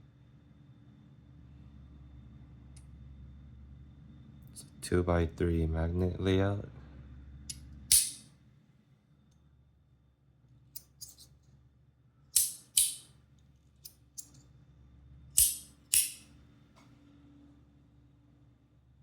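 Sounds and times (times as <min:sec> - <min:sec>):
magnetic slider metallic clicks: 0:07.9 - 0:08.2, 0:12.4 - 0:13.1, 0:15.4 - 0:16.3.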